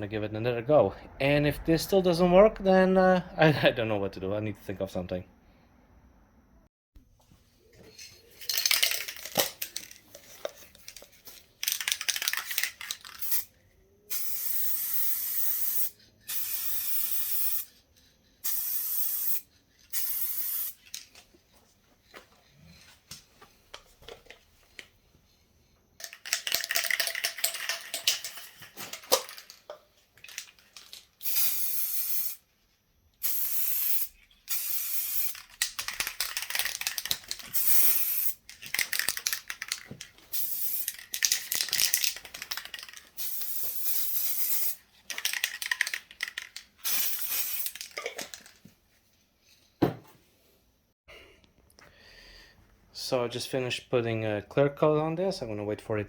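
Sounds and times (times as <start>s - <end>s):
aerosol spray can hissing: 14.1s - 17.7s, 18.4s - 20.8s, 31.2s - 32.4s, 33.2s - 35.5s, 36.7s - 38.4s, 40.3s - 41.3s, 43.2s - 44.8s, 46.8s - 47.9s.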